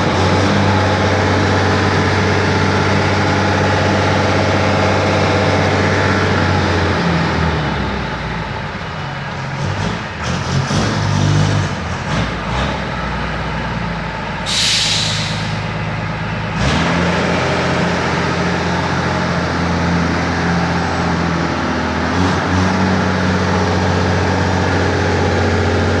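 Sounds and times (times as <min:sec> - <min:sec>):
engine idling: 0:13.2 - 0:16.6
short hiss: 0:14.5 - 0:15.7.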